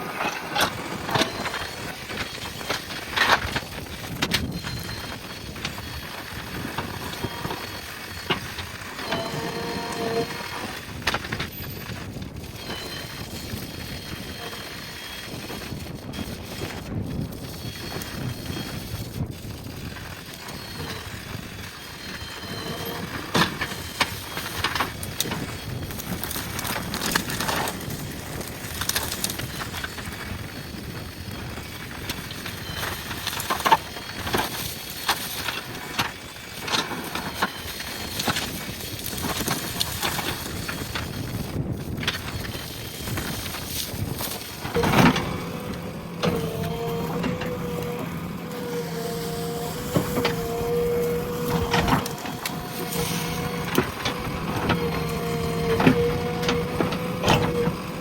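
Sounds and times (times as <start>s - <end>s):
diesel engine running: 0.0s - 16.7s, 19.4s - 58.0s
branches cracking and snapping: 32.8s - 58.0s.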